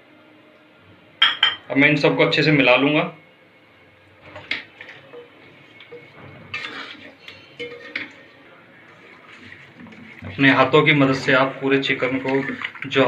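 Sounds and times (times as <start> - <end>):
clinks and knocks against bowl: 1.2 - 1.6
soft wet mixing by hand: 4.2 - 13.0.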